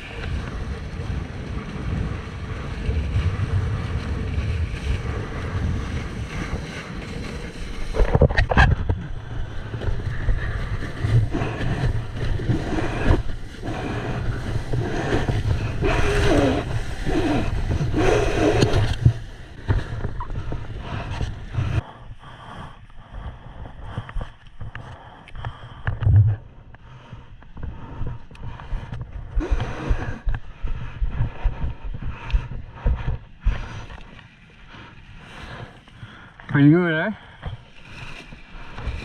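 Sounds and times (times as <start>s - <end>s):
wind buffeting microphone: 0.0s - 36.4s
rushing water: 2.4s - 21.8s.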